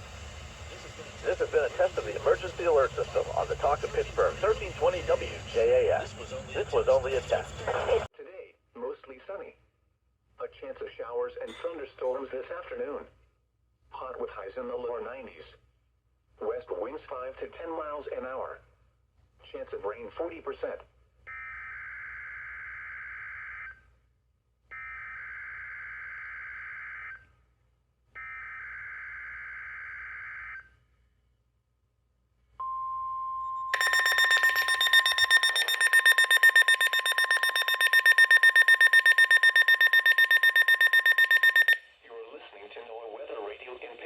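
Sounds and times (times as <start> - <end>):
steady warning alarm tone: 0.0 - 8.1, 33.6 - 41.8
rapidly pulsing receiver beep: 0.8 - 8.1, 33.6 - 41.8
buzzing digital data bursts: 33.8 - 41.8.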